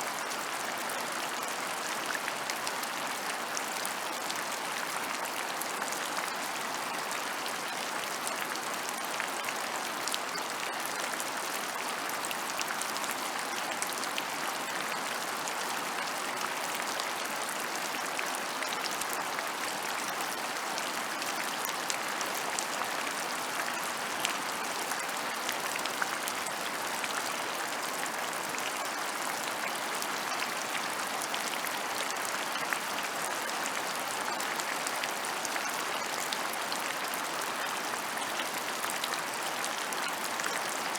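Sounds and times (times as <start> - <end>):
steady rain patter: 0.0 - 40.9.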